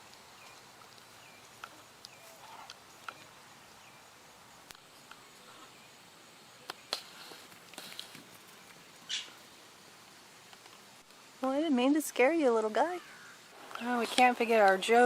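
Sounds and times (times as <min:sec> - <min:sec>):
birds chirping and clicking: 0:00.1 - 0:05.8, 0:06.6 - 0:09.4, 0:12.6 - 0:15.0.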